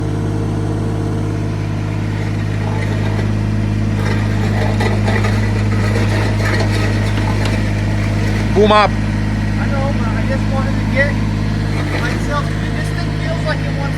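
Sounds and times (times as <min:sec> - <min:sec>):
diesel engine running: 0:00.0 - 0:13.9
clattering and knocking: 0:02.1 - 0:08.8, 0:11.6 - 0:13.0.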